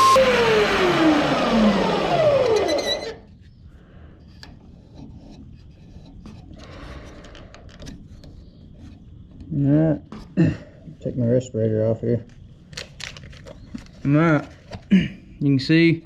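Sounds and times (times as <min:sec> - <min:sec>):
electric drill spinning down: 0:00.0 - 0:03.3.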